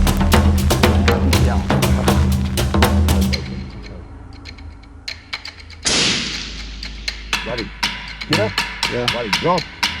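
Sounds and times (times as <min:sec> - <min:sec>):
steady bass line: 0:00.0 - 0:03.8
fast percussive beat: 0:00.0 - 0:10.0.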